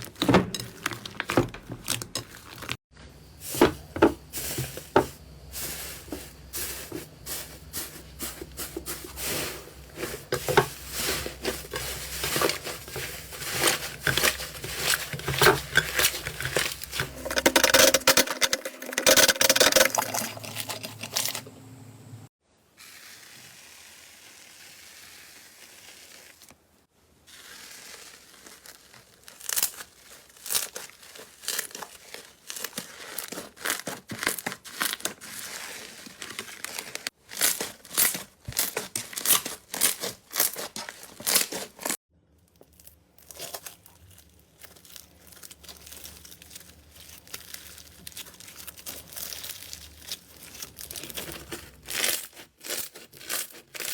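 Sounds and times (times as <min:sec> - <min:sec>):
slime crackling and popping: 0:42.6 - 0:51.3.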